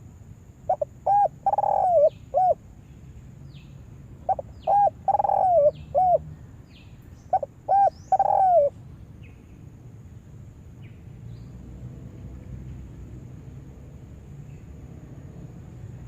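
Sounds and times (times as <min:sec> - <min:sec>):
dove cooing: 0:00.7 - 0:02.6, 0:04.3 - 0:06.2, 0:07.3 - 0:08.8.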